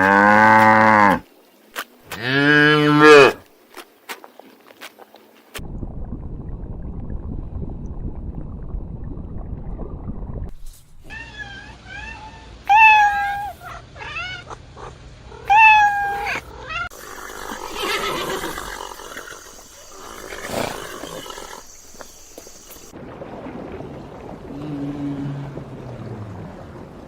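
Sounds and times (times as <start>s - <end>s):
cat meowing: 11.1s - 14.6s, 15.4s - 16.9s.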